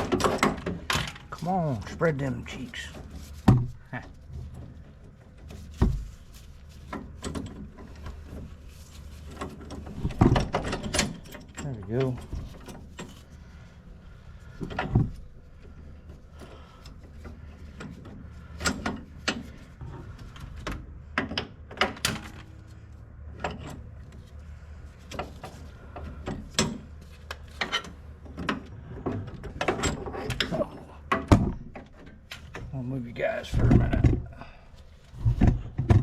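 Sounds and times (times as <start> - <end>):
tools knocking and clanking: 0.0 - 1.4.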